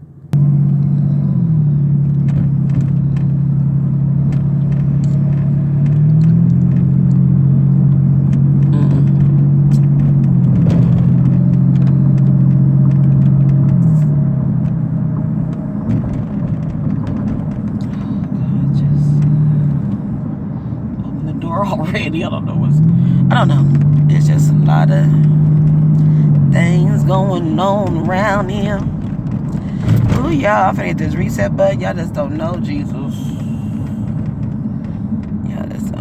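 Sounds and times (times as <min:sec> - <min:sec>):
motor vehicle engine humming: 0:00.0 - 0:36.0.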